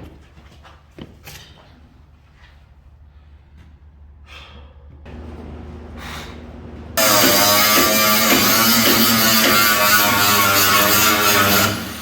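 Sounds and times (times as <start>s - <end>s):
steady low hum: 2.6s - 12.0s.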